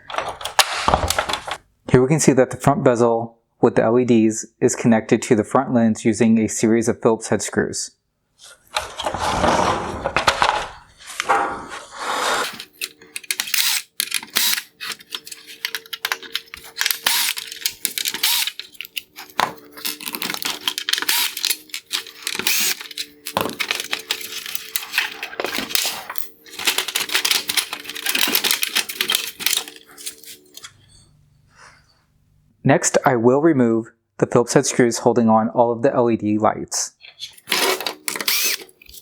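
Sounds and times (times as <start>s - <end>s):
screwdriver clicking on hard plastic: 12.5s - 30.6s, 37.4s - 39.0s.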